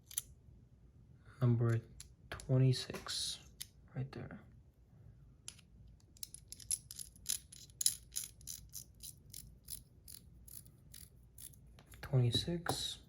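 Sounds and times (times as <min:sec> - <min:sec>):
metallic clicks and clinks: 0:05.5 - 0:11.6.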